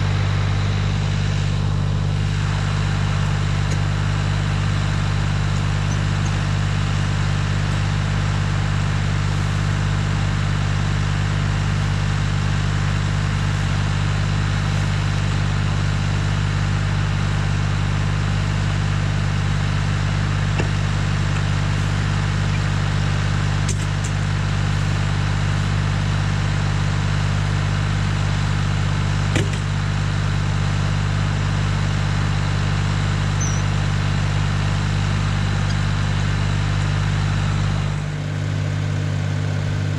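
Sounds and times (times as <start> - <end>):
tractor engine running: 0.0 - 39.9
wood chipper humming: 0.0 - 39.9.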